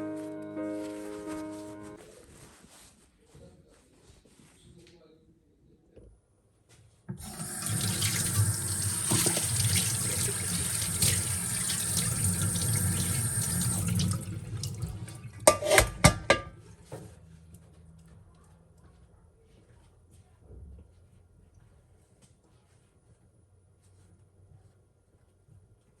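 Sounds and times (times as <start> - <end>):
water running from a tap: 7.1 - 16.1.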